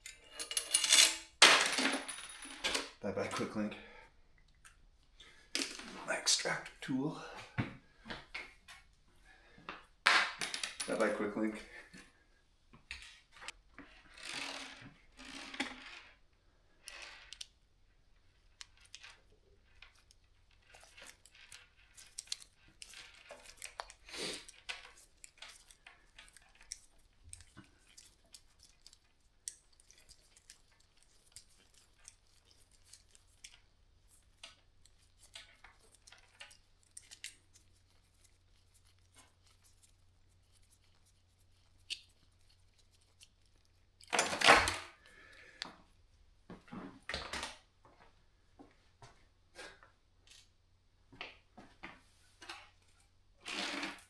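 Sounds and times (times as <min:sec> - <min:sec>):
bicycle chain rattle: 0:14.0 - 0:16.1, 0:18.8 - 0:40.6
small metal clicks: 0:18.4 - 0:44.9.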